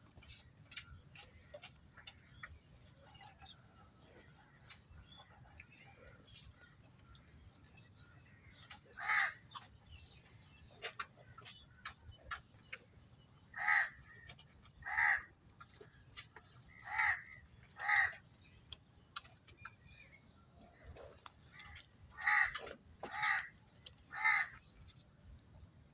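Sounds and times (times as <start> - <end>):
crow cawing: 9.0 - 9.4, 13.6 - 14.0, 14.8 - 15.3, 17.8 - 18.2, 22.2 - 23.5, 24.1 - 24.5.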